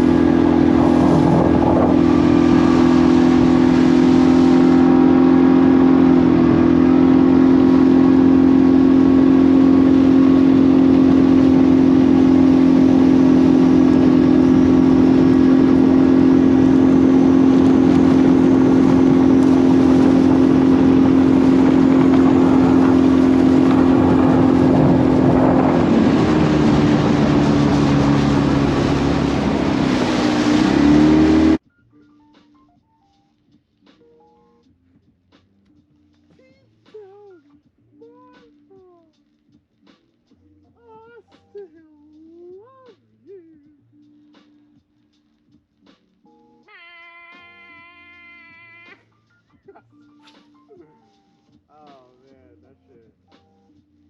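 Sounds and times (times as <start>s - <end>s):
outboard motor running: 0.0s - 31.6s.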